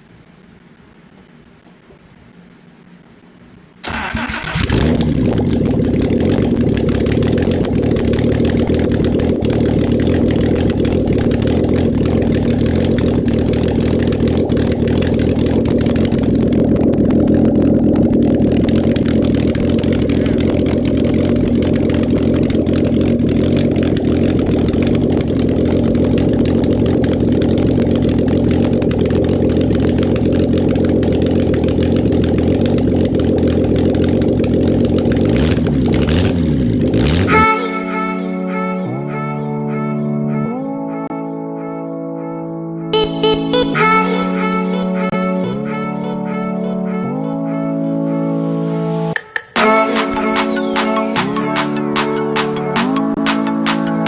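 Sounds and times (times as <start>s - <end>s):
car engine starting and idling: 3.8s - 38.3s.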